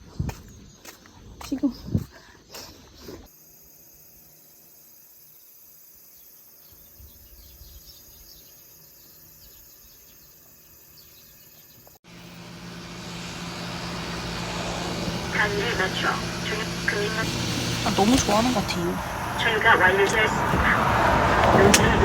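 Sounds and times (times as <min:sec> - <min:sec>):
insect chirping: 0:02.7 - 0:21.5
bird chirps: 0:05.2 - 0:15.2
low hum with rushing noise: 0:12.1 - 0:22.0.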